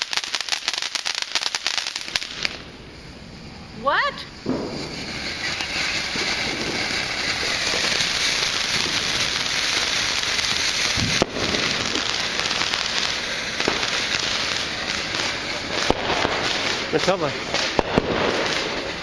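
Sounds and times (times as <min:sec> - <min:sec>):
firework crackling hiss: 0:00.0 - 0:19.0
sharp crack: 0:04.4 - 0:19.0.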